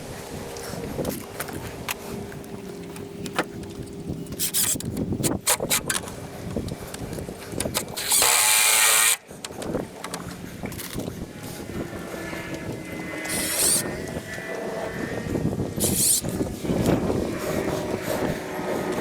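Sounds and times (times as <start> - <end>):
power drill running: 5.4 - 9.3, 9.9 - 19.0.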